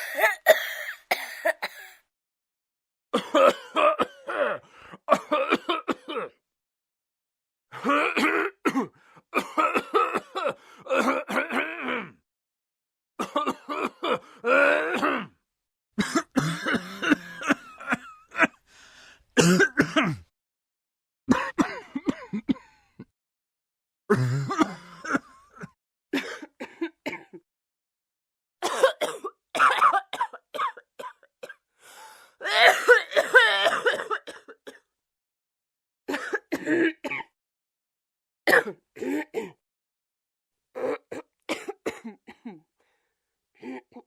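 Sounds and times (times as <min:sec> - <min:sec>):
person coughing: 0:00.0 - 0:02.0, 0:03.2 - 0:06.4, 0:07.8 - 0:12.1, 0:16.0 - 0:18.6, 0:19.4 - 0:20.3, 0:21.3 - 0:22.8, 0:24.1 - 0:27.4, 0:28.6 - 0:31.6, 0:32.4 - 0:34.9, 0:36.1 - 0:37.4, 0:38.5 - 0:39.6, 0:40.8 - 0:42.7.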